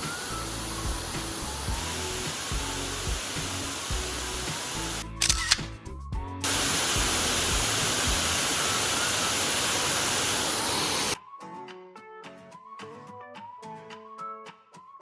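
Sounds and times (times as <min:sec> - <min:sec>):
loud rushing hiss: 0:00.0 - 0:05.0, 0:06.4 - 0:11.2.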